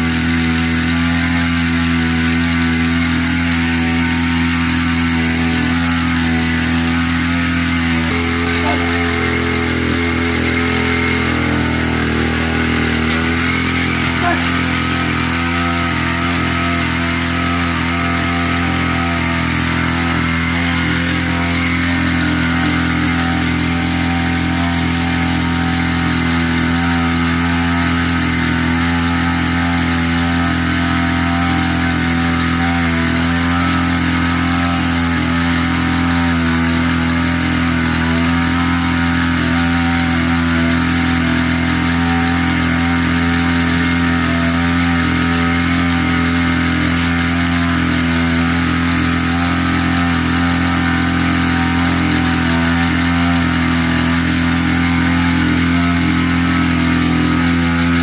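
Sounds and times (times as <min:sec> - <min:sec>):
small petrol engine running: 0:00.0 - 0:58.0.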